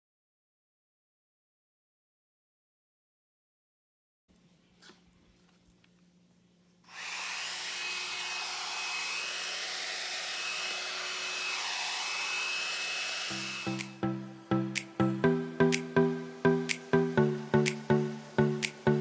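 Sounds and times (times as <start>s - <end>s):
hair dryer blowing with motor whine: 6.9s - 14.0s.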